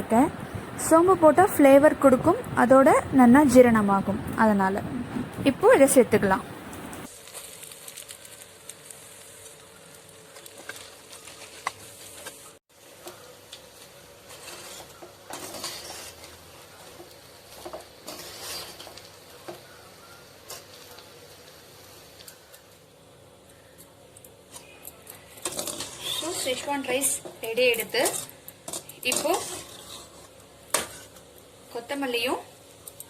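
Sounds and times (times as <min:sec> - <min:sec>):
light sizzle: 0:00.0 - 0:33.0
spatula scraping a pan: 0:13.0 - 0:19.6, 0:24.5 - 0:31.2.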